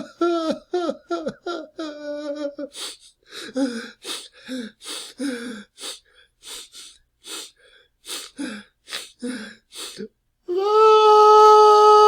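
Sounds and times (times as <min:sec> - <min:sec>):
man sobbing: 0:00.0 - 0:05.8.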